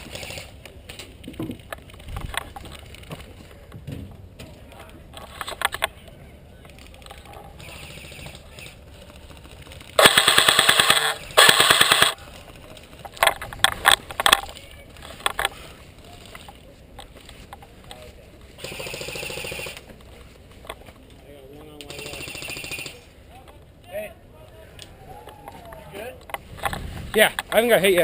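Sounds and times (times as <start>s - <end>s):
airsoft rifle firing bursts: 10.0s - 12.2s, 18.6s - 19.8s.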